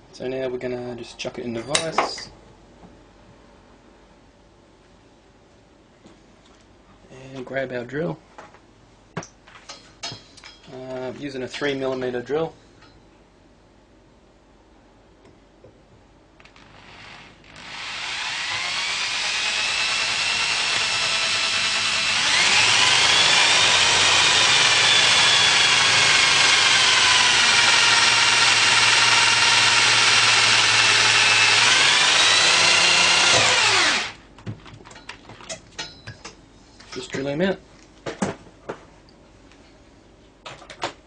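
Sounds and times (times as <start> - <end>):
electric drill whining: 16.4 - 34.2.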